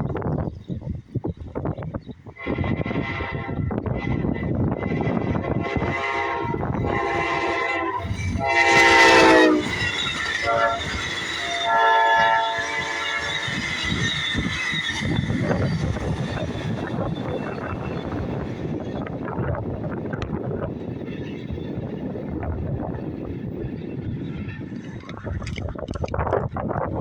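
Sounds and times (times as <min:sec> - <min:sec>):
train wheels rumbling on rails: 0:00.0 - 0:27.0
train horn blasts: 0:02.4 - 0:13.6.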